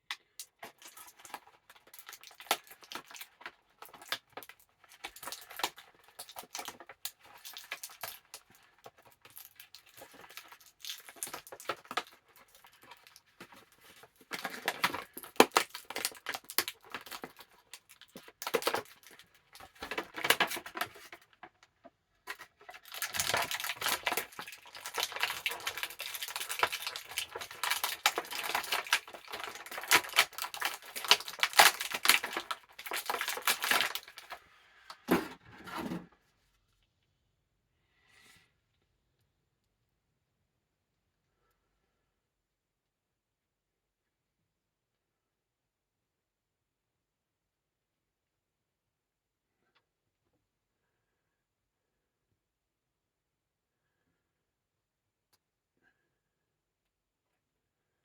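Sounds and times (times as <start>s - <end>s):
plastic and cardboard crinkling: 0.0s - 36.1s.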